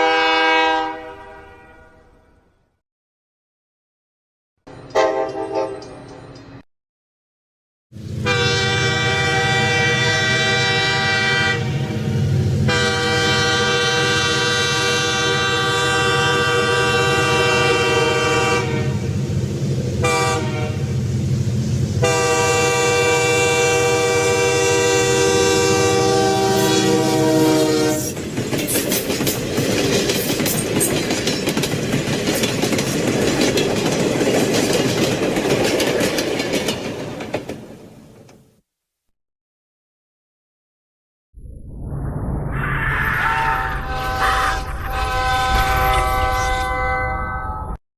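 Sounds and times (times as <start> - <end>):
train horn chord: 0.0 - 2.4, 4.9 - 5.9, 8.2 - 19.1, 20.0 - 21.0, 22.0 - 28.2, 43.8 - 47.5
low train rumble: 8.0 - 38.4, 41.7 - 47.7
train wheels clattering: 28.0 - 37.7.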